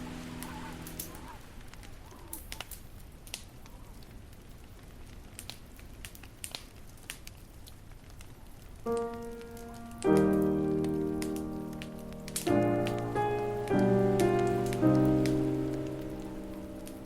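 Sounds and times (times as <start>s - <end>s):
fireplace crackling and popping: 0.0s - 17.0s
low rumble of burning: 0.0s - 17.0s.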